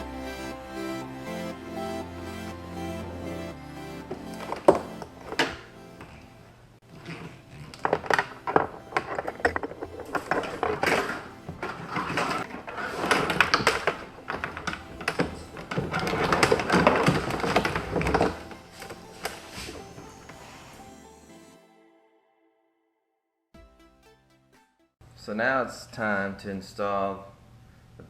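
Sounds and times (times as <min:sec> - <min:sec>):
faint background music: 0:00.0 - 0:22.4.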